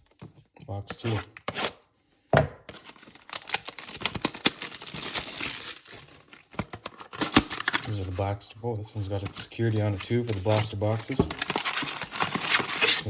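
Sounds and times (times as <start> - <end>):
packaging crinkling and tearing: 2.7 - 8.3, 9.1 - 13.0.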